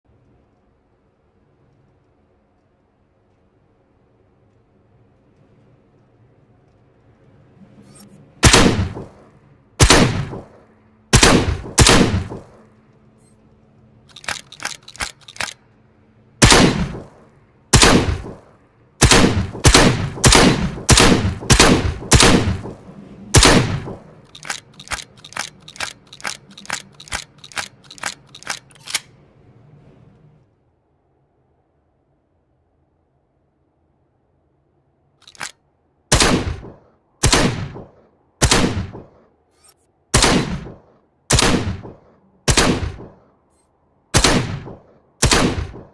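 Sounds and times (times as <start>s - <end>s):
shotgun firing: 8.4s - 9.2s, 9.8s - 10.5s, 11.1s - 12.5s, 16.4s - 17.1s, 17.7s - 18.4s, 19.0s - 22.8s, 23.4s - 25.0s, 36.1s - 39.1s, 40.1s - 43.2s, 44.2s - 45.9s.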